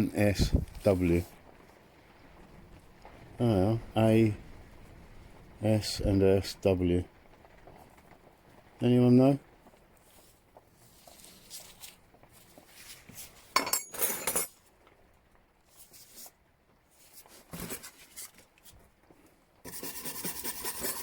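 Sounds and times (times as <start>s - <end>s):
spanners clinking together: 13.6s - 14.5s
scraping rasp: 19.7s - 21.0s.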